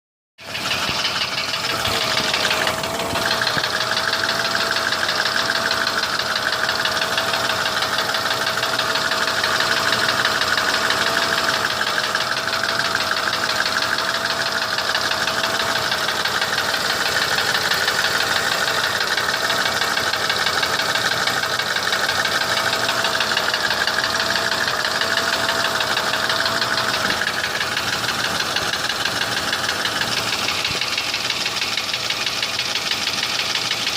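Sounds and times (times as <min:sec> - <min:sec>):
car engine running: 0:00.4 - 0:33.9
rapid engine knocking: 0:00.4 - 0:33.9.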